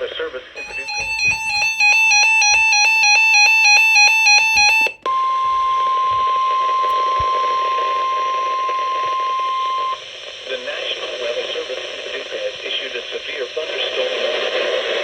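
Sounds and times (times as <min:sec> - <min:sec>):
alternating electronic beeps: 0:00.6 - 0:05.0
steady alarm tone: 0:00.6 - 0:10.0.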